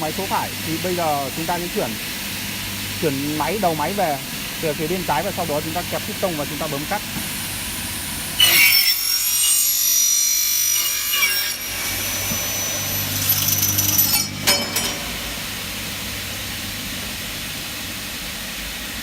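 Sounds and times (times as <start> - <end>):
saw motor running: 0.0 - 16.6
saw blade screeching through aluminium: 8.4 - 15.3.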